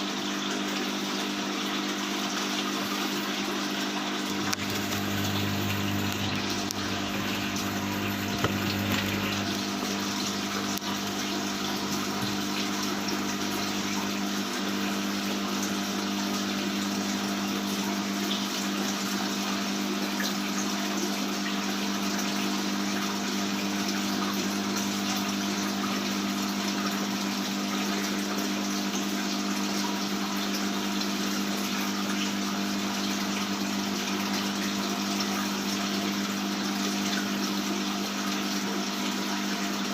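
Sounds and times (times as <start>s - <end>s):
pump humming: 0.0s - 39.9s
flowing water rushing: 1.0s - 17.2s.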